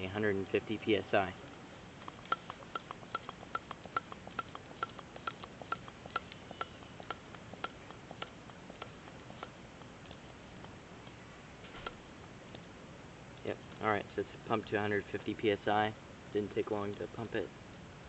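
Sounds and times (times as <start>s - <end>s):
air pump clicking: 2.0s - 9.6s.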